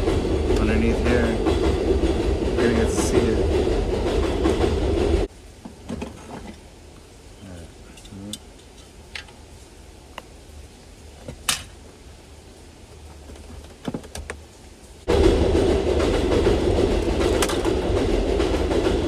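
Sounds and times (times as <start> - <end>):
loud mechanical rumble: 0.0 - 5.3.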